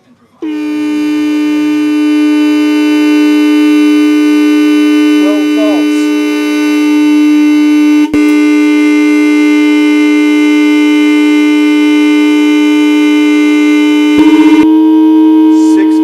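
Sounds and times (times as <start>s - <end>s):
car horn steady tone: 0.4s - 16.0s.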